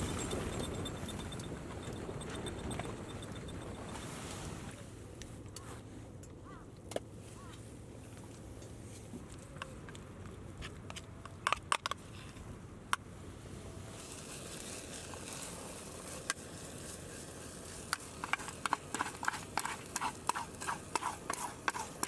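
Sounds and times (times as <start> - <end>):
light taps and clatters: 0.0 - 4.5.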